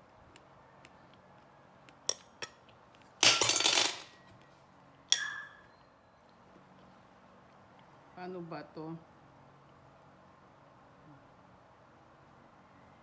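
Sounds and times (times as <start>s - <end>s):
dish clinking: 3.2s - 4.1s.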